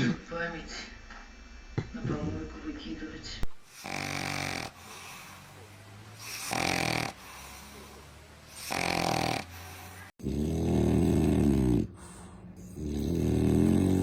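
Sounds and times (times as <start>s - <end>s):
dog snoring: 3.7s - 5.5s, 6.2s - 14.0s.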